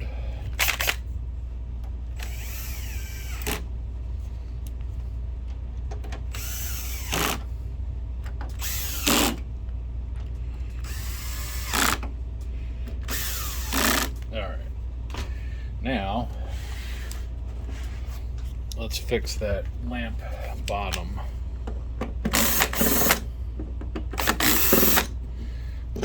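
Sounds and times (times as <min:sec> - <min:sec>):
electric screwdriver whirring: 0:02.2 - 0:03.6, 0:06.3 - 0:07.4, 0:08.6 - 0:09.4, 0:10.8 - 0:12.0, 0:13.1 - 0:14.2, 0:22.3 - 0:23.3, 0:24.2 - 0:25.2.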